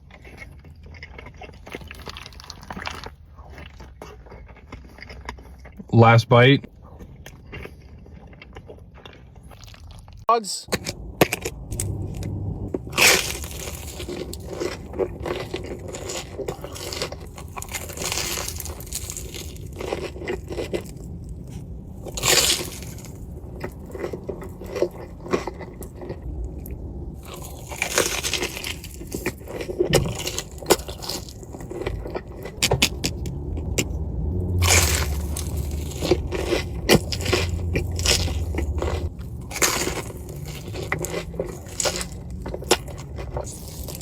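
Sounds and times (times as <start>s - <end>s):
crunchy food chewing: 0.0s - 5.9s, 6.7s - 44.0s.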